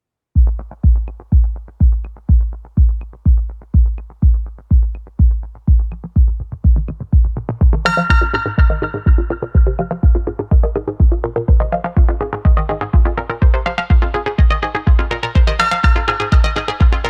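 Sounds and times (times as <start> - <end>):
drum machine kick drum: 0.4 - 17.0
synthesizer chord: 7.8 - 17.0.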